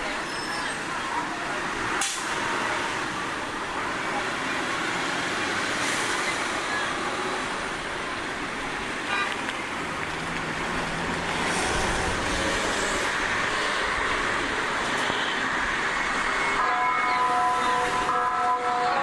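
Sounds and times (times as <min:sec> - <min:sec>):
people's voices: 0:00.0 - 0:19.0
road traffic: 0:00.0 - 0:19.0.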